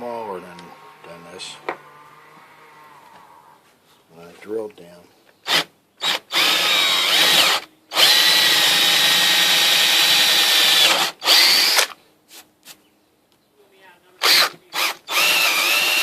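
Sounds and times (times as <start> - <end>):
electric drill boring into wood: 5.4 - 12.0, 14.2 - 16.0.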